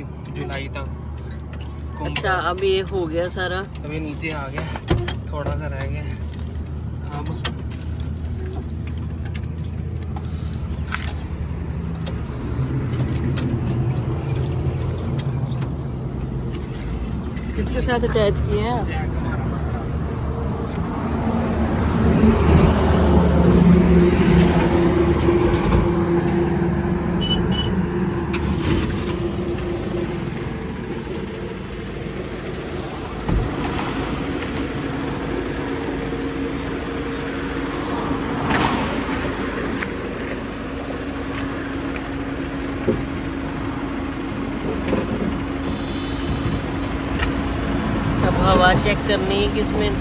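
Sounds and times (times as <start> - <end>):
steady engine hum: 0.0 - 50.0
vehicle passing by: 17.7 - 41.7.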